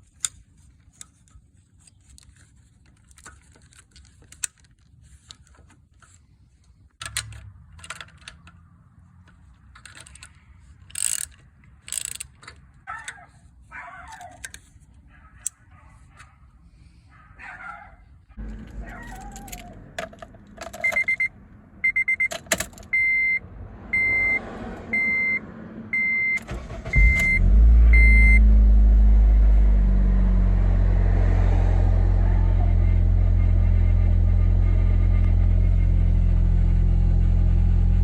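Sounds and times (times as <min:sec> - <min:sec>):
car engine cranking and idling: 0:00.1 - 0:13.1, 0:18.2 - 0:38.0
keys rattling: 0:09.4 - 0:13.1, 0:18.4 - 0:21.3, 0:22.2 - 0:23.0
dashboard warning chime beeping: 0:20.8 - 0:23.4, 0:24.0 - 0:28.5.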